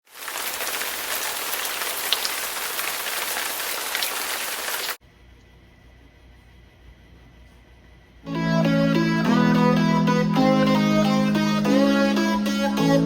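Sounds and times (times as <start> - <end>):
rain-like hiss: 0.1 - 5.0
faint low hum: 5.0 - 8.3.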